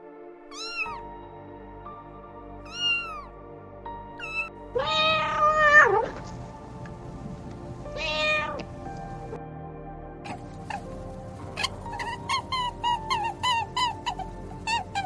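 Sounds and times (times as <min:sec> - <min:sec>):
soft background music: 0:00.0 - 0:15.0
cat meowing: 0:00.5 - 0:01.1, 0:02.6 - 0:03.3, 0:04.2 - 0:06.8, 0:07.8 - 0:09.2, 0:11.6 - 0:15.0.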